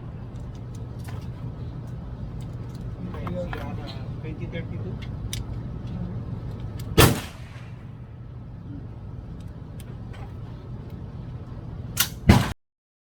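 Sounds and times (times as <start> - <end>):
low hum: 0.0 - 12.4
gunshot: 7.0 - 7.8, 12.0 - 12.6.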